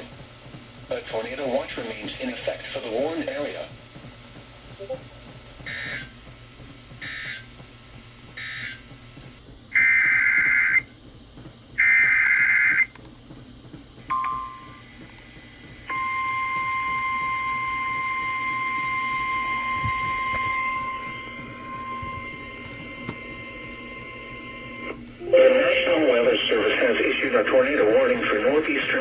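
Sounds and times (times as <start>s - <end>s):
steady alert tone: 25.2s - 26.3s.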